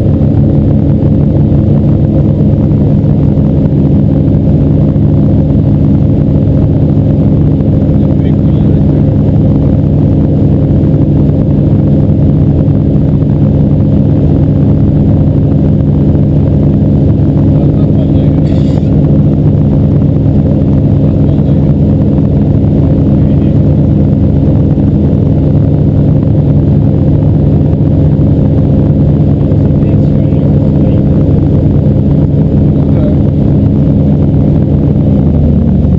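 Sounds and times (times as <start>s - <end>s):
motorboat engine drone: 0.0s - 35.9s.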